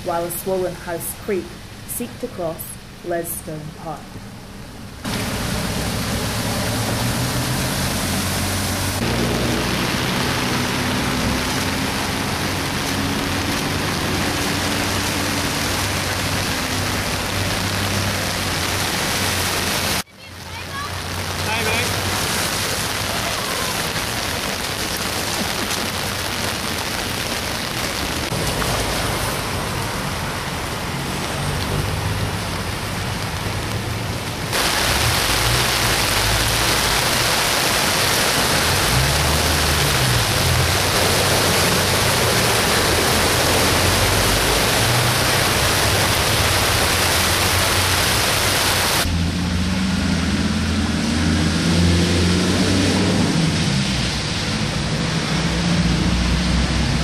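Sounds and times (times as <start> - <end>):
heavy rain and floodwater hiss: 0.0 - 57.0
car engines running low: 4.2 - 57.0
engine revving: 5.1 - 20.0, 34.6 - 57.0.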